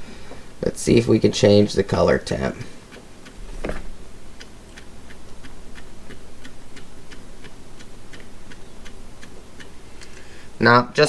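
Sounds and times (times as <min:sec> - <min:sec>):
light control clicking: 0:02.9 - 0:10.2
soft handling thump: 0:03.4 - 0:04.0.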